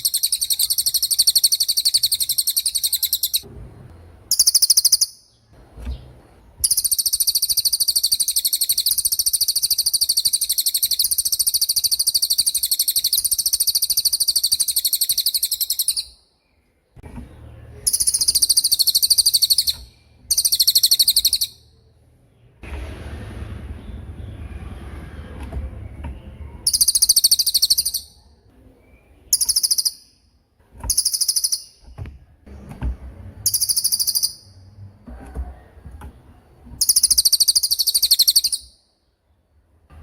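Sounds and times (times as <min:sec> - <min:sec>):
songbird fast rattling trill: 0:00.0 - 0:03.4, 0:04.3 - 0:05.2, 0:06.6 - 0:16.2, 0:17.8 - 0:21.6, 0:26.6 - 0:28.1, 0:29.3 - 0:30.2, 0:30.9 - 0:31.9, 0:33.4 - 0:34.6, 0:36.8 - 0:38.8.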